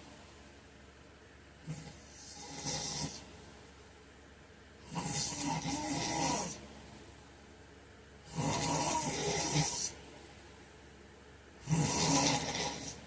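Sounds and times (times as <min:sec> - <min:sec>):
man snoring: 0:01.6 - 0:03.3, 0:04.8 - 0:06.6, 0:08.3 - 0:10.0, 0:11.6 - 0:13.0.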